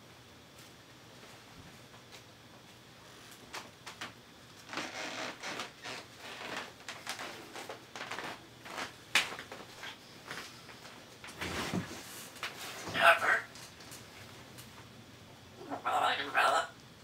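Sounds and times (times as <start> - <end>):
parrot scratchy noises and clicks: 12.2 - 14.8, 15.6 - 16.7.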